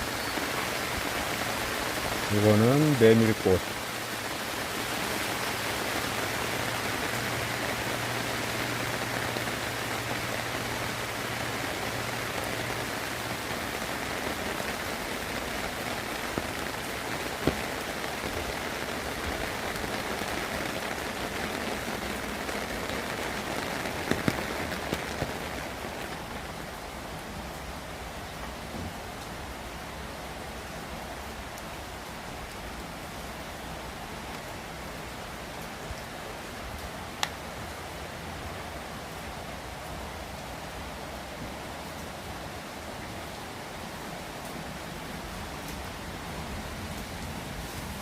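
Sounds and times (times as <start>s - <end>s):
heavy rain falling: 0.0s - 48.0s.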